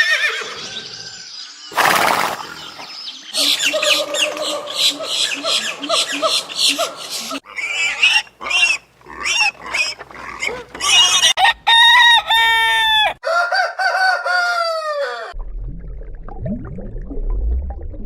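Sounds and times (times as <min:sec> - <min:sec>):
chickens clucking and squawking: 0:01.8 - 0:15.4
rooster crowing: 0:11.0 - 0:15.4.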